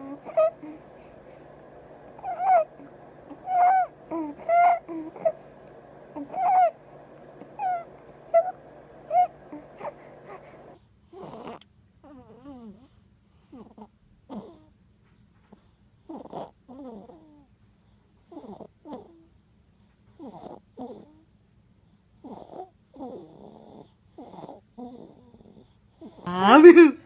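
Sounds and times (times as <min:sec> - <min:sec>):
baby wheezy breathing: 0:09.5 - 0:11.6.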